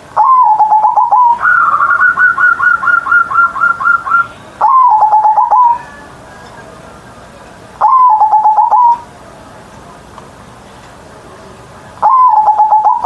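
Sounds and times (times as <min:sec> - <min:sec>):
dove cooing: 0:00.2 - 0:06.8, 0:07.8 - 0:09.0, 0:12.0 - 0:13.0.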